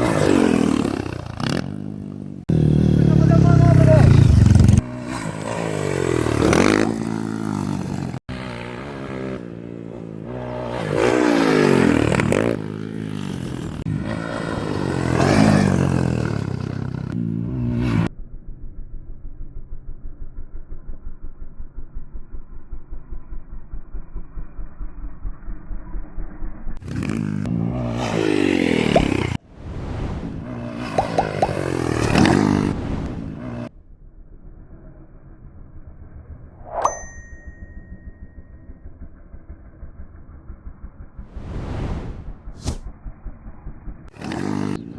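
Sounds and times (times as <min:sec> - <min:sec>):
motorcycle engines revving: 0:00.0 - 0:18.1, 0:26.8 - 0:33.8, 0:38.9 - 0:44.9.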